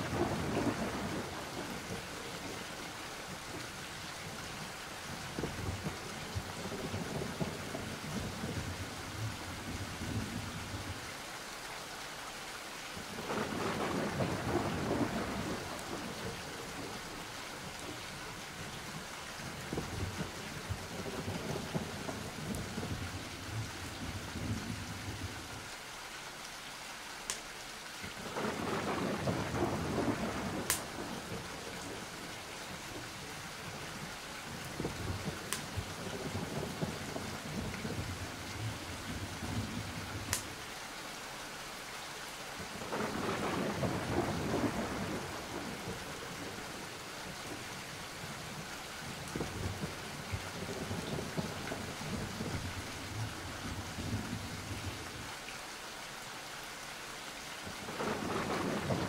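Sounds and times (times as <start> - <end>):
thunder rumbling: 0.0 - 2.6, 5.2 - 11.0, 13.1 - 17.1, 19.6 - 25.5, 28.2 - 32.3, 33.6 - 40.5, 42.7 - 55.2, 57.7 - 59.0
steady rain: 0.0 - 59.0.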